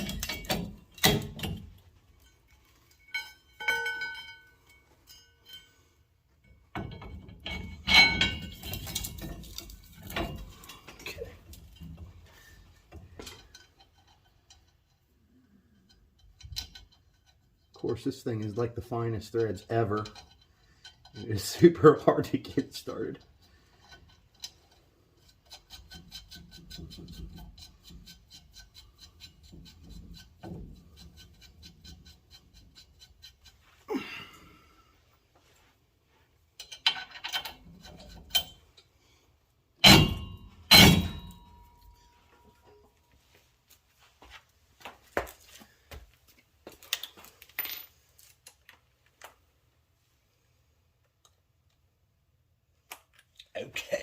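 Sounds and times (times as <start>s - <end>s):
metal clanks: 0.0s - 17.8s, 36.6s - 38.9s, 39.8s - 43.0s
loud metal-on-metal bangs: 39.8s - 41.5s.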